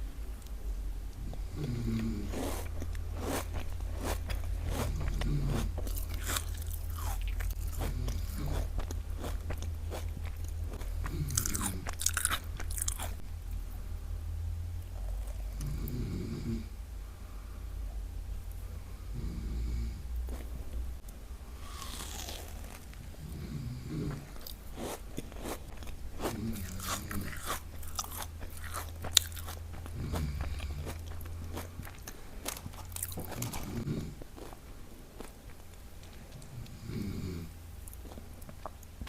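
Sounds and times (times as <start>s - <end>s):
crunching and chewing cookie: 0.0s - 13.9s, 14.8s - 16.6s, 20.0s - 39.0s
steady low hum: 0.0s - 39.0s
man snoring: 1.4s - 2.6s, 15.6s - 16.7s, 19.1s - 20.0s, 23.2s - 24.4s, 30.0s - 30.9s, 33.6s - 34.2s, 36.6s - 37.5s.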